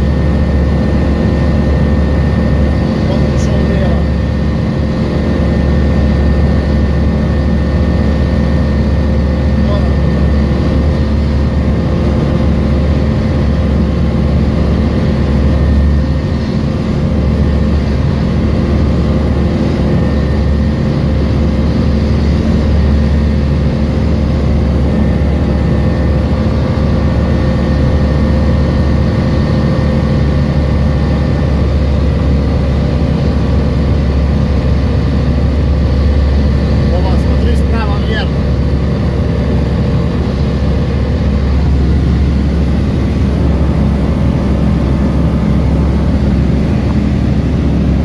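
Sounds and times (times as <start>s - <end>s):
light aircraft engine and propeller: 0.0s - 48.0s.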